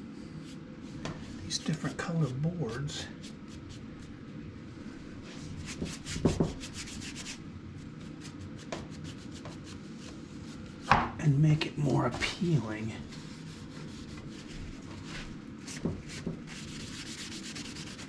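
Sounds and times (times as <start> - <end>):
knock: 6.2 - 6.6, 10.9 - 11.2
rubbing stain on wooden boards: 13.1 - 18.0.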